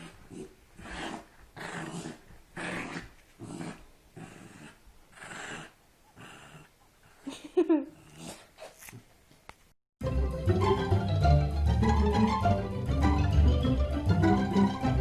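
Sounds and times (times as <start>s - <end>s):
dog growling: 0.0s - 8.7s.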